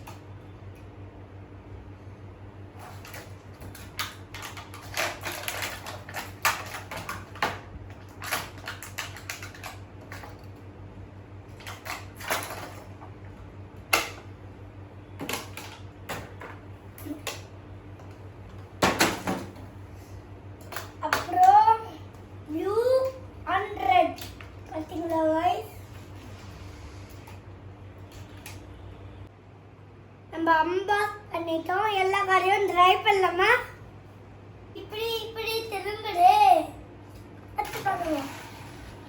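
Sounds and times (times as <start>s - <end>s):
plastic toy cars clicking and tapping: 3.0s - 10.5s.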